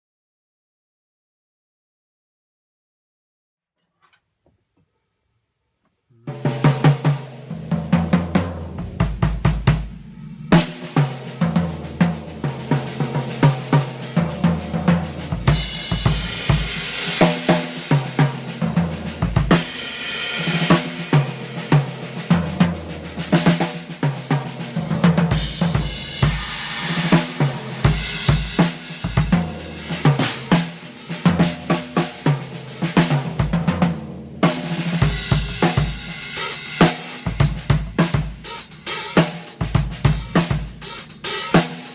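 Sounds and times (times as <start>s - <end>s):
snare drum: 6.5s - 41.9s
cymbals: 8.7s - 33.8s, 34.4s - 41.9s
hi-hat: 36.0s - 41.9s.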